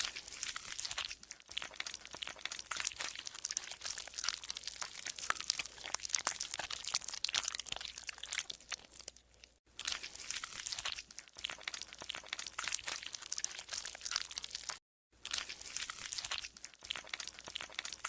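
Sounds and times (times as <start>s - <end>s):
slime crackling squelches: 0.0s - 18.0s.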